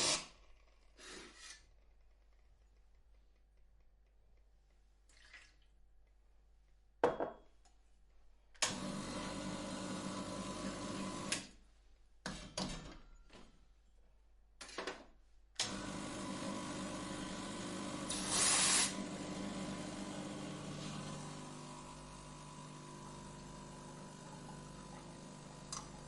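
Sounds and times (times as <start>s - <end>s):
coffee grinder motor grinding: 8.7s - 11.3s, 15.6s - 26.0s.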